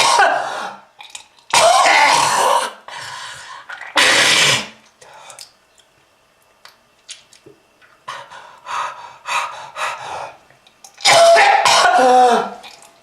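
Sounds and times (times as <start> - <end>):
person coughing: 0.0 - 0.5, 11.0 - 12.6.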